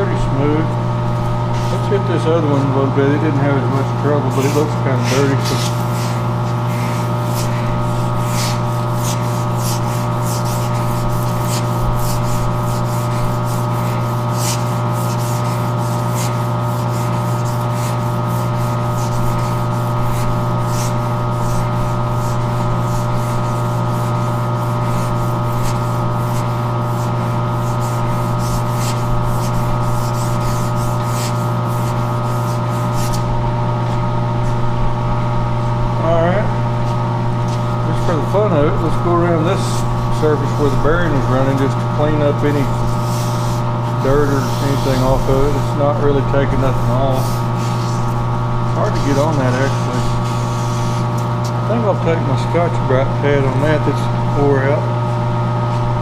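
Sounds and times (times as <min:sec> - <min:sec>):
metal lathe humming: 0:00.0 - 0:55.9
sandpaper rasping on metal: 0:04.2 - 0:33.3, 0:38.0 - 0:51.9.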